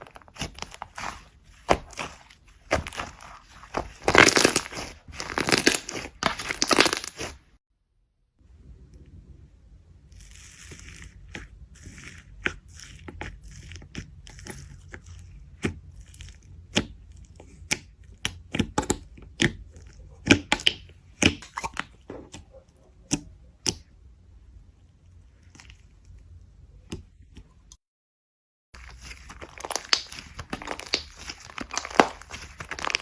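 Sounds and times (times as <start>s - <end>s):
slime clicking and popping: 0.3s - 7.3s, 29.3s - 33.0s.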